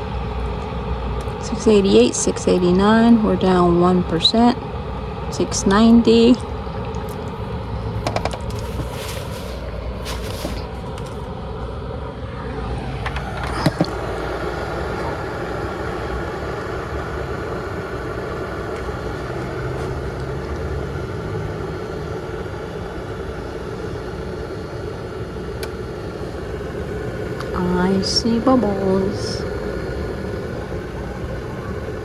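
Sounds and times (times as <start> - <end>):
electric kettle heating water: 0.0 - 32.0
kettle sharp clicks: 25.6 - 25.8.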